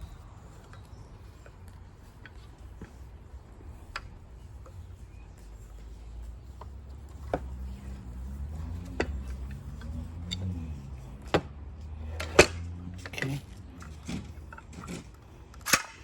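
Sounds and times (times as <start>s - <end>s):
sharp clicks and knocks: 6.6s - 10.6s, 11.2s - 16.0s.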